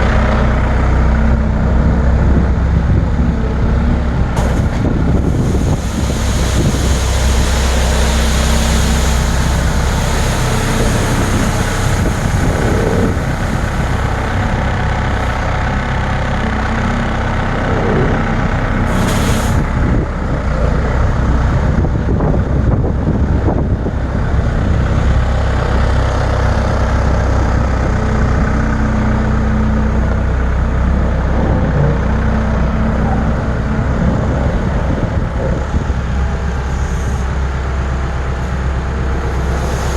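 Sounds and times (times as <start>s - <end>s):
steady rushing noise: 0.0s - 16.5s, 30.0s - 39.9s
diesel engine running under load: 0.0s - 39.9s
short hiss: 18.9s - 19.7s.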